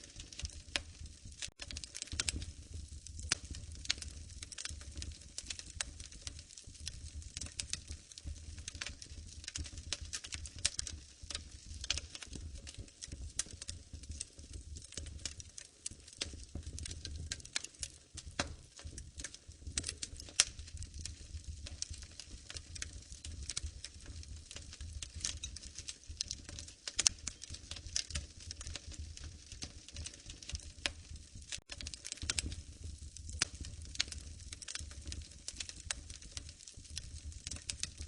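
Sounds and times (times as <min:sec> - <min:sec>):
low rumble of flames: 0:00.0 - 0:38.0
wood fire crackling and popping: 0:00.0 - 0:38.0.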